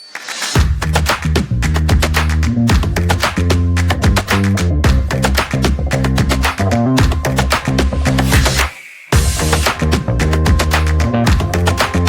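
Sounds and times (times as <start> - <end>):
plucked strings with bass and drums: 3.9 - 8.5.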